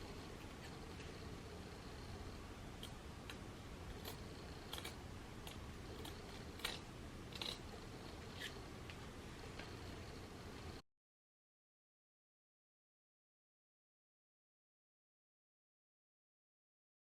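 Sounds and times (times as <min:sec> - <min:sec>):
low steady hum: 0:00.0 - 0:10.8.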